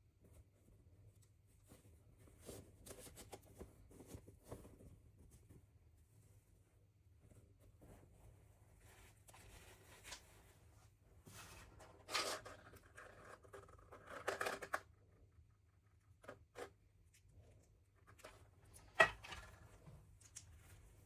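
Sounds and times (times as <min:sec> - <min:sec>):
rustling and scraping materials: 0:00.2 - 0:15.1.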